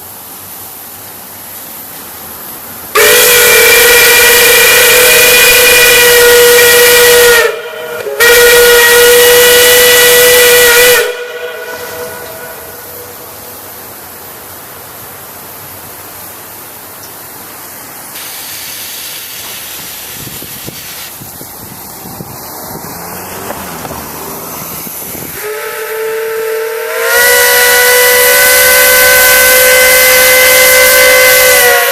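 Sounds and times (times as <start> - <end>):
rushing steam hiss: 0.0 - 31.9
industrial whistle blast: 2.9 - 13.8, 25.2 - 31.9.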